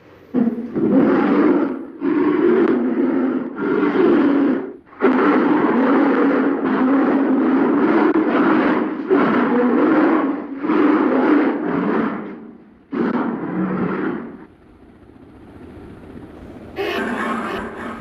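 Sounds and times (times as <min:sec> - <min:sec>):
polar bear growling: 0:00.2 - 0:14.5, 0:16.4 - 0:18.0.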